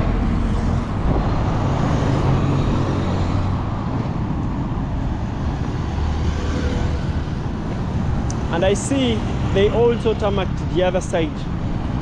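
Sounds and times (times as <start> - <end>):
vehicle engines rumbling: 0.0 - 12.0.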